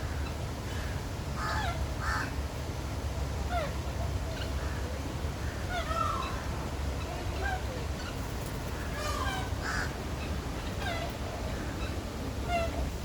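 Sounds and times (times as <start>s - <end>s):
birds calling: 3.5s - 13.0s.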